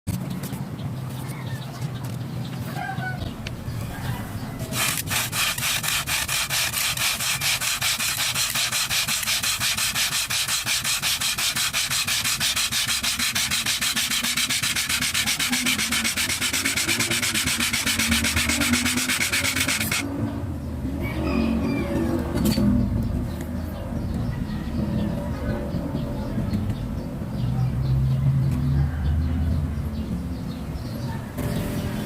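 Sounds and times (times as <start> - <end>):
sanding strokes on wood: 4.6 - 20.0.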